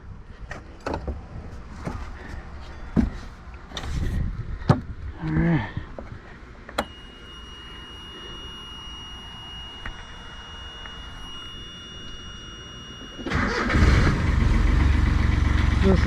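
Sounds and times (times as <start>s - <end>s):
high-pitched warning buzzer: 6.8s - 14.7s.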